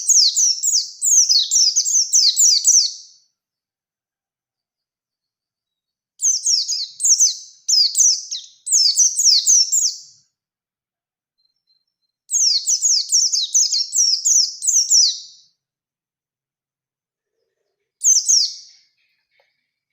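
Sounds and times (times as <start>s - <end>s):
bird twittering song: 0.0s - 3.3s, 5.1s - 10.3s, 11.4s - 15.6s, 18.0s - 19.8s.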